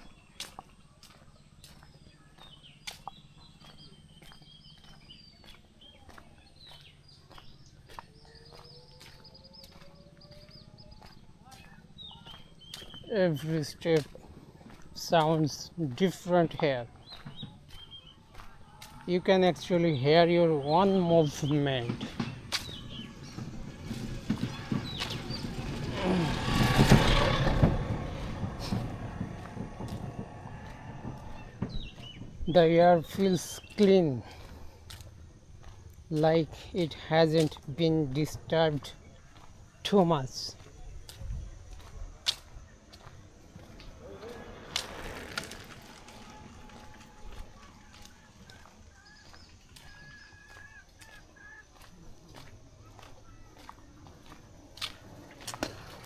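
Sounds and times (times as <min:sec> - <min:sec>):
footsteps on brick road: 0:00.0 - 0:56.0
small birds chirping: 0:00.0 - 0:56.0
rushing noise: 0:22.6 - 0:31.7.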